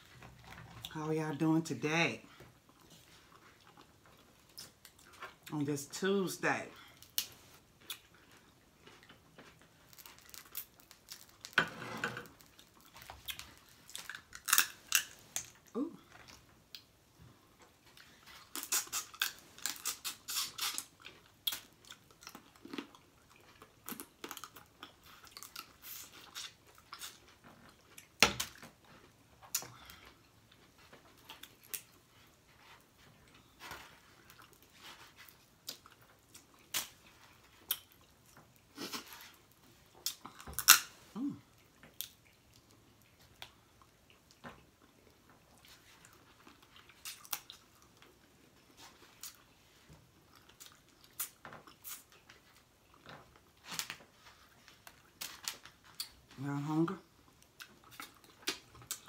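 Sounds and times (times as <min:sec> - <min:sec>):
wet chewing and lip smacking: 0:02.6 - 0:05.5, 0:07.0 - 0:11.5, 0:12.4 - 0:40.8, 0:41.4 - 0:49.6, 0:50.2 - 0:56.3, 0:57.0 - 0:59.0
crab shells crunching and snapping: 0:07.0 - 0:11.6, 0:12.2 - 0:15.6, 0:18.4 - 0:27.2, 0:40.0 - 0:40.9.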